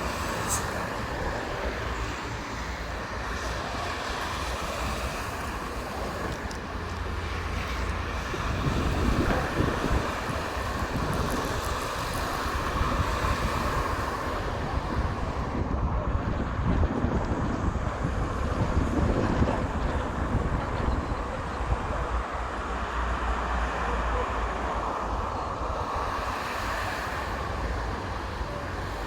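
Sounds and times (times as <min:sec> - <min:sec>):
wind buffeting microphone: 0:00.0 - 0:23.2.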